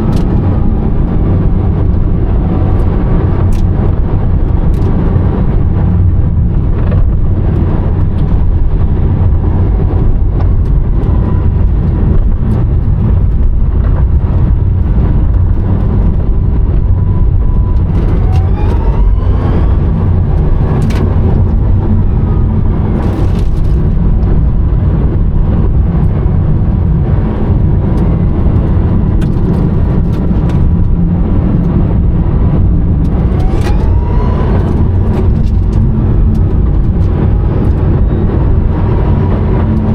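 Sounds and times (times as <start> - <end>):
road and tyre rumble: 0.0 - 39.9
electric motor whine: 15.8 - 23.6, 33.1 - 39.8.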